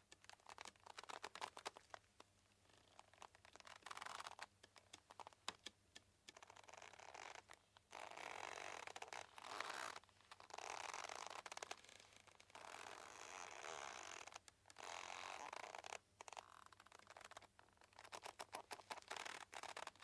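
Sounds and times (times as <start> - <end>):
quick clicking ticks: 4.2 - 6.5.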